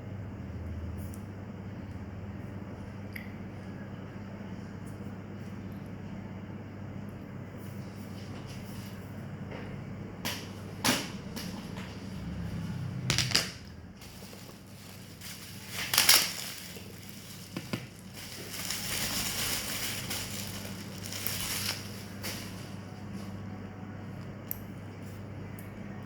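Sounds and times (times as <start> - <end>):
low electrical hum: 0.0 - 26.0
packaging crinkling and rustling: 13.2 - 23.3.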